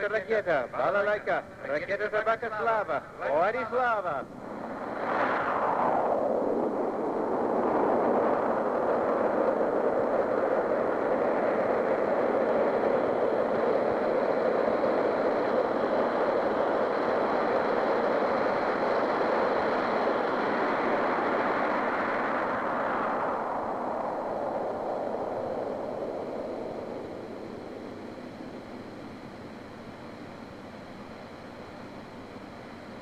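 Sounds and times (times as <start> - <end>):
rocket engine roaring: 0.0 - 13.2.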